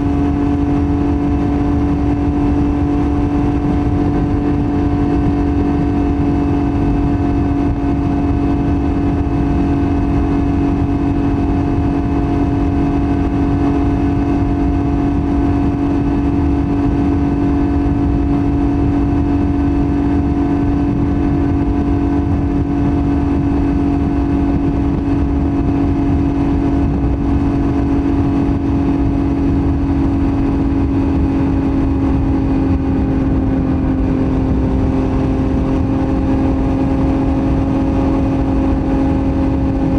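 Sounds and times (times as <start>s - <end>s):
motorcycle engine at steady revs: 0.0s - 39.9s.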